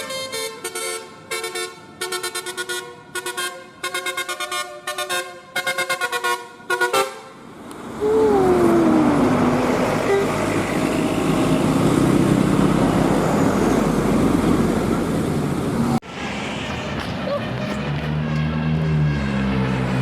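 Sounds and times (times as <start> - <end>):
bus passing rumble: 7.2 - 20.0
musical air horn notes: 10.0 - 10.5, 16.6 - 20.0.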